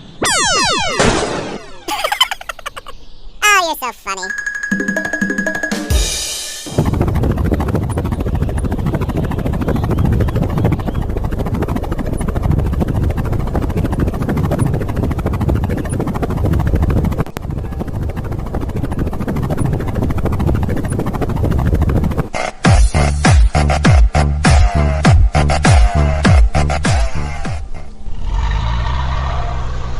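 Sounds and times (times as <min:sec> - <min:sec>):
helicopter rotor and engine: 0:04.1 - 0:22.3.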